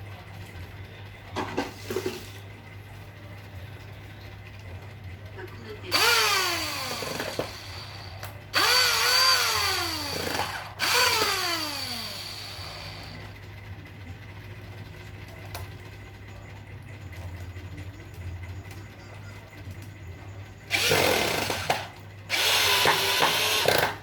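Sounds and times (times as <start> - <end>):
low background hum: 0.0 - 24.0
electric drill whining: 5.9 - 13.3, 20.7 - 24.0.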